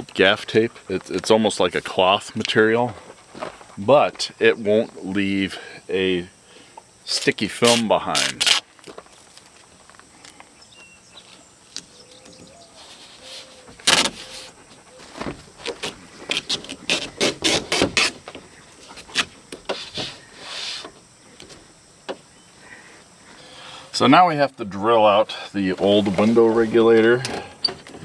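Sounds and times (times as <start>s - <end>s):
tape being pulled and torn: 7.2s - 8.9s, 12.8s - 14.5s, 15.6s - 18.3s.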